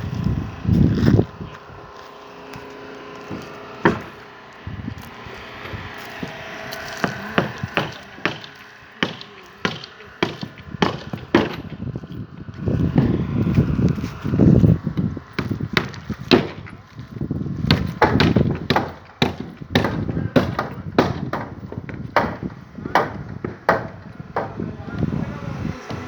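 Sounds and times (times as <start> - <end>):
wood knocking on wood: 3.3 - 4.2, 7.0 - 11.8, 17.7 - 24.6.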